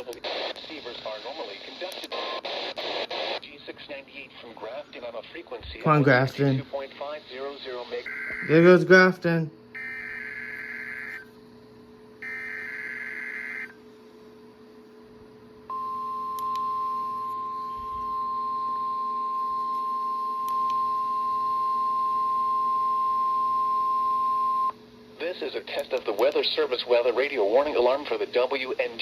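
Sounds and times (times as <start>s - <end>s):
weather radio alarm tone: 8.1s - 9.1s, 9.8s - 11.2s, 12.2s - 13.8s, 15.7s - 24.7s.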